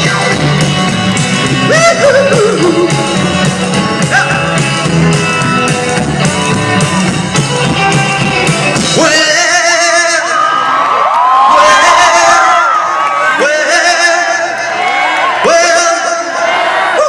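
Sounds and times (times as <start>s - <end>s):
rock and roll music: 0.0s - 10.8s
guitar: 0.0s - 11.0s
person singing: 1.5s - 5.0s.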